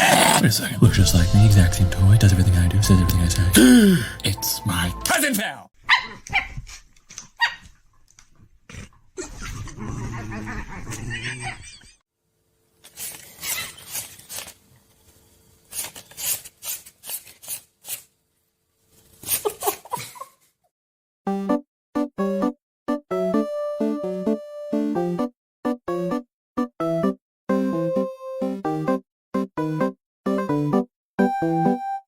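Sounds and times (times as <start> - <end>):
dog vocalising: 0.0 - 0.6.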